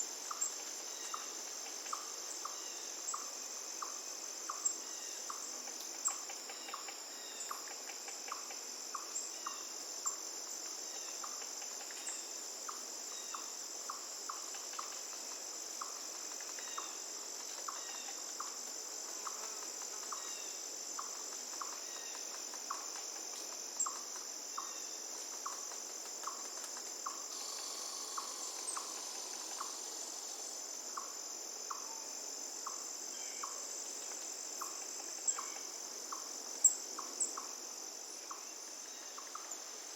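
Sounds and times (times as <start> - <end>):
high-pitched insect trill: 0.0 - 39.9
flowing water hiss: 27.2 - 31.4.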